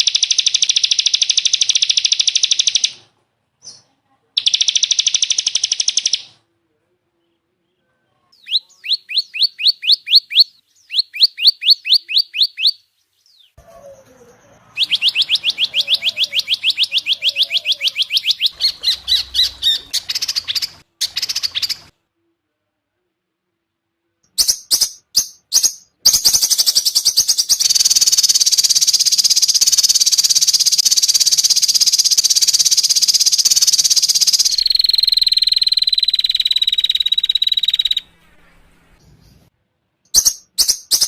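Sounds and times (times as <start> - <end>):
songbird trills and whistles: 8.4 - 21.9, 24.4 - 38.2.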